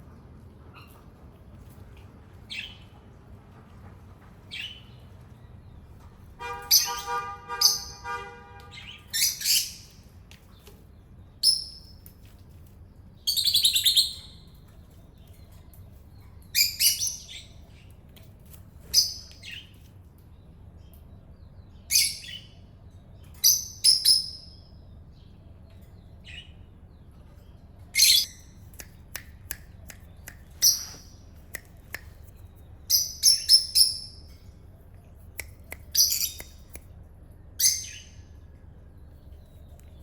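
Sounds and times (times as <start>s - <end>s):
high-pitched chirping calls: 8.7s - 10.0s, 13.3s - 14.5s, 28.0s - 34.4s, 35.3s - 36.9s.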